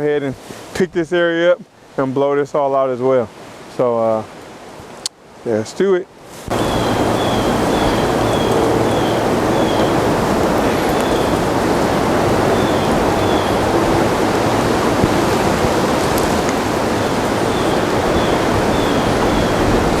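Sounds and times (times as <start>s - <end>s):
leaf blower running: 6.5s - 20.0s.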